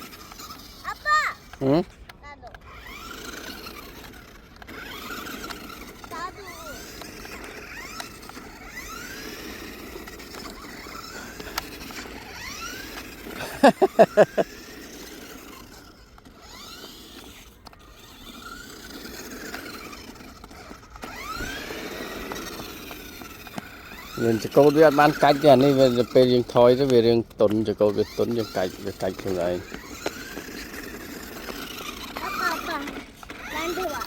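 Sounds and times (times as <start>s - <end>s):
toy car electric motor whining: 0.0s - 34.0s.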